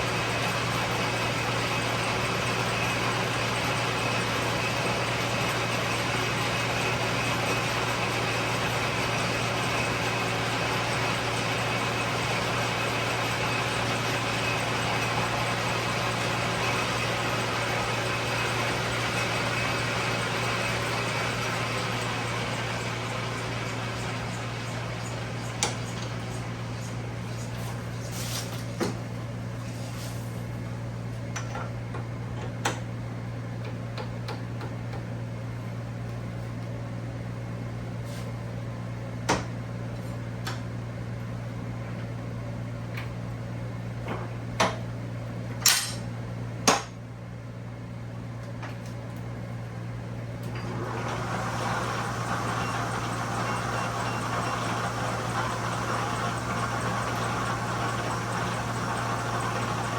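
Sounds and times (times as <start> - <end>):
lathe humming: 0.0 - 27.2, 50.6 - 59.9.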